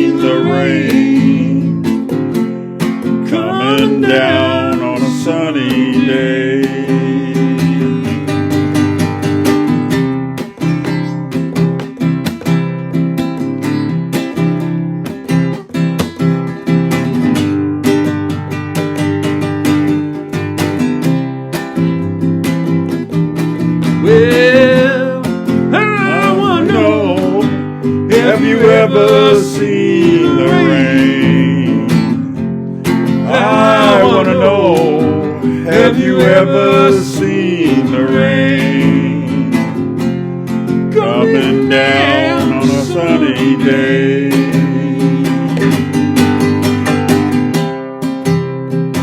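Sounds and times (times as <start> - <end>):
person singing: 0.0 - 2.1, 3.2 - 8.5, 24.0 - 32.4, 33.1 - 40.0, 40.7 - 46.0
acoustic guitar strumming: 0.0 - 49.0.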